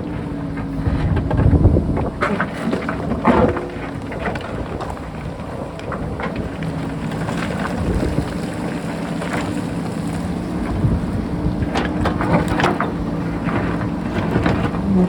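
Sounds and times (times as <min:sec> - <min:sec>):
diesel engine running: 0:00.0 - 0:15.0
wind rumbling on microphone: 0:00.0 - 0:15.0.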